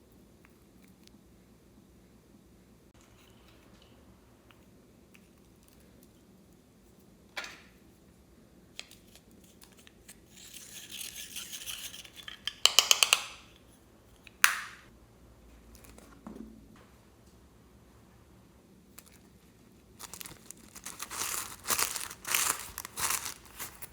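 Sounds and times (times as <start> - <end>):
rustling scrape: 20.0 - 23.9.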